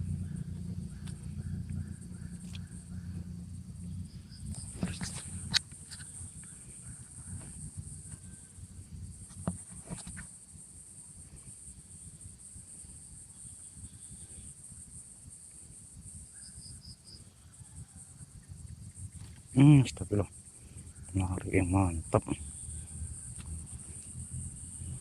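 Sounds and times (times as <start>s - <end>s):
low rumble: 0.0s - 9.3s
insects chirring: 0.0s - 25.0s.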